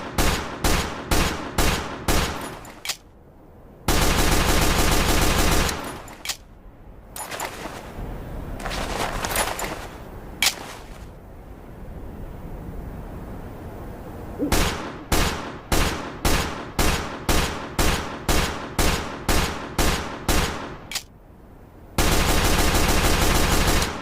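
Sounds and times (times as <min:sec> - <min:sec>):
gun click: 0:02.4 - 0:03.1, 0:05.7 - 0:06.5, 0:10.4 - 0:10.8, 0:20.9 - 0:21.1
rapid gunfire burst: 0:03.9 - 0:06.0, 0:22.0 - 0:24.0.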